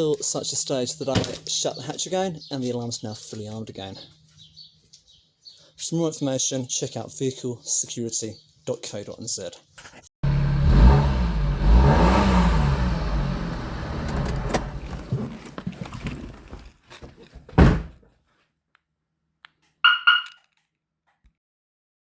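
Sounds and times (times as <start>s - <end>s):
car engine running: 10.2s - 16.7s
car door shutting: 10.3s - 16.5s
short electronic beeps: 19.8s - 20.4s.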